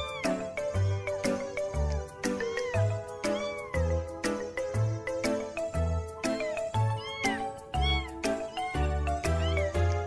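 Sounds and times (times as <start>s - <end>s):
cat meowing: 0.0s - 1.2s, 2.3s - 4.0s, 6.2s - 10.0s
background music with steady beat: 0.0s - 10.0s.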